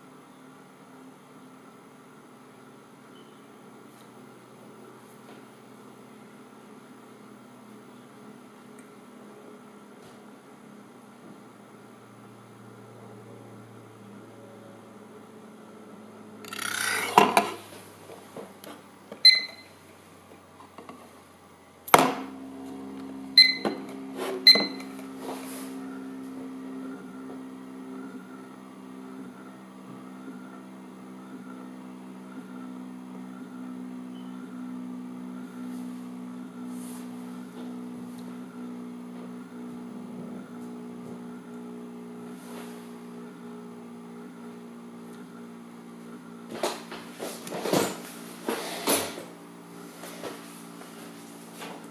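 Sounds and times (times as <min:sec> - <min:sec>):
spinning top humming: 0:16.4 - 0:17.8.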